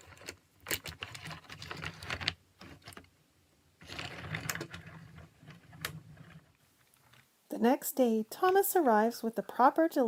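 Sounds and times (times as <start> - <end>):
plastic toys clicking and rattling: 0.0 - 3.1, 3.8 - 7.3.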